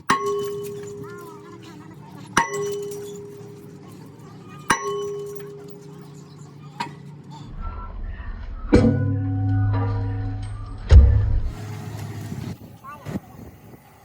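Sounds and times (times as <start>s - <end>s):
steel clanging: 0.0s - 7.5s
low hum: 0.3s - 12.6s.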